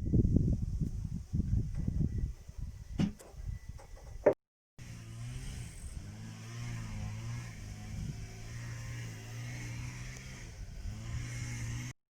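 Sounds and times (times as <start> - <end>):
motor running with low drone: 4.8 - 12.0.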